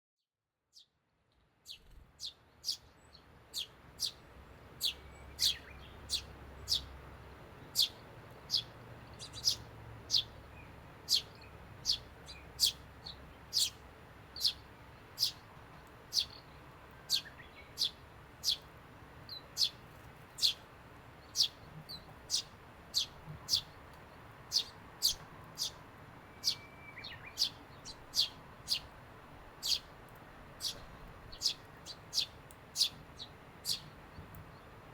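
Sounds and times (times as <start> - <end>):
sparrow chirping: 1.6 - 4.2, 4.8 - 34.8.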